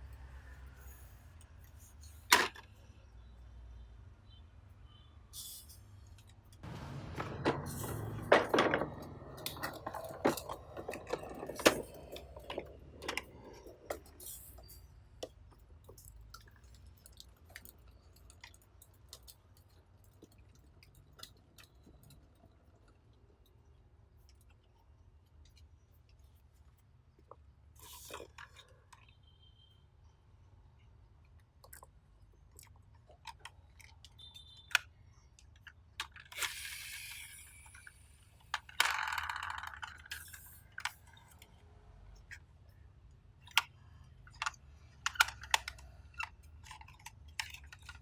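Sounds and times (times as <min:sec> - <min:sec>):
toys rustling and clicking: 0:05.4 - 0:29.0, 0:32.8 - 0:48.0
sharp clacks of toys: 0:06.2 - 0:16.0, 0:33.0 - 0:41.5, 0:43.5 - 0:48.0.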